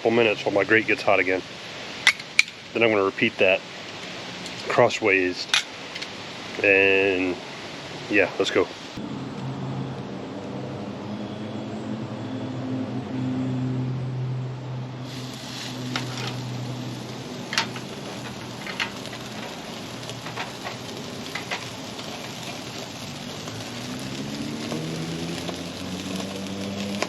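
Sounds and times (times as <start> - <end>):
steady low hum: 8.8 - 24.1
steak sizzling on a grill: 15.0 - 27.0
fat popping and crackling: 15.1 - 27.0.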